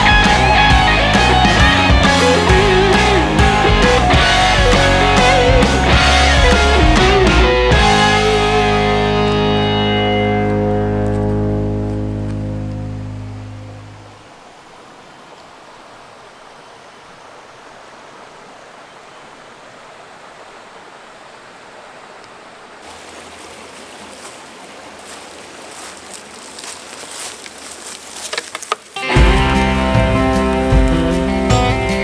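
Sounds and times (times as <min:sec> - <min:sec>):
creek water running: 0:00.0 - 0:32.0
small water splashes: 0:22.8 - 0:31.5.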